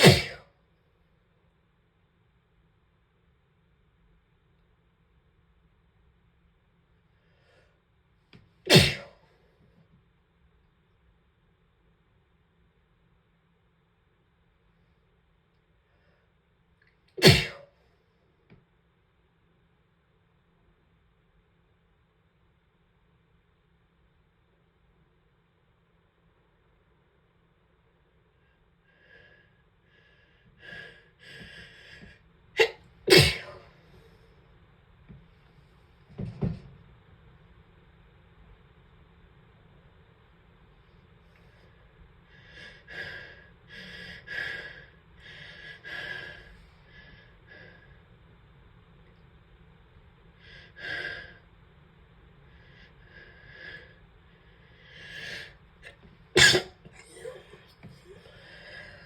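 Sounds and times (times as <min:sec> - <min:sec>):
person sneezing: 0:00.0 - 0:00.5, 0:08.7 - 0:09.2, 0:17.2 - 0:17.7, 0:32.6 - 0:33.7, 0:56.4 - 0:58.5.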